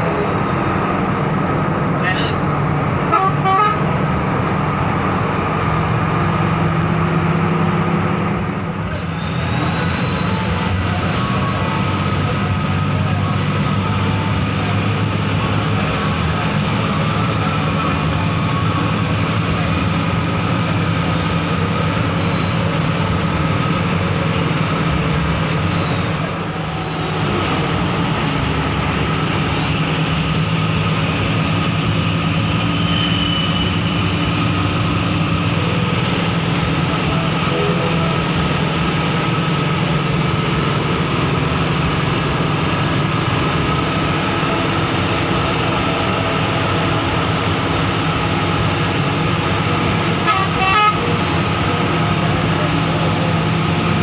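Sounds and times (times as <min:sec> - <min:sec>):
bus engine and road noise: 0:00.0 - 0:54.0.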